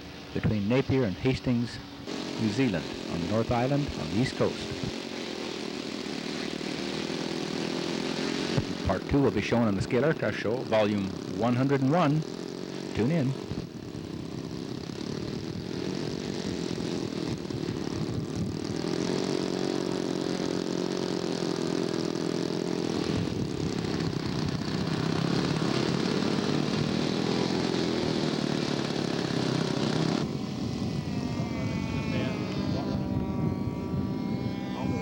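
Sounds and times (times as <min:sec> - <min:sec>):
model airplane engine running: 0:00.0 - 0:35.0.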